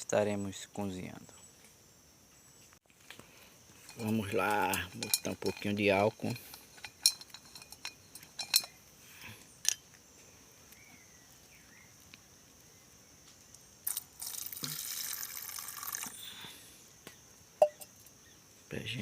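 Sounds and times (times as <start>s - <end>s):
liquid pouring: 13.8s - 16.2s.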